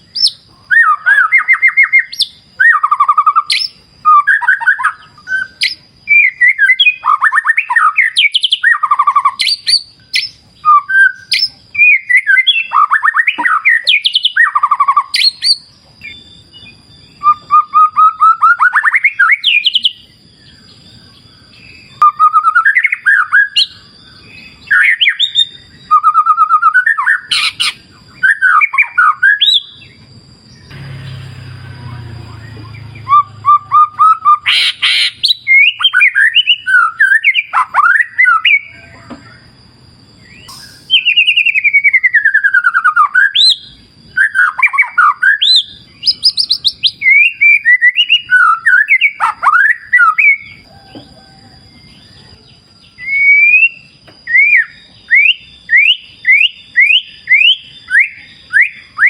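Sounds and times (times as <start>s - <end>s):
bird singing with trills: 0.0s - 59.0s
faint high-pitched tone: 30.7s - 34.4s.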